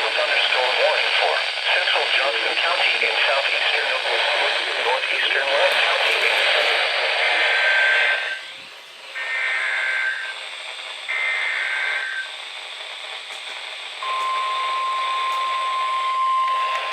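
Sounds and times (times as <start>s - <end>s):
radio receiver hiss: 0.0s - 16.9s
steady warning alarm tone: 0.0s - 16.9s
buzzy digital data bursts: 9.2s - 15.8s.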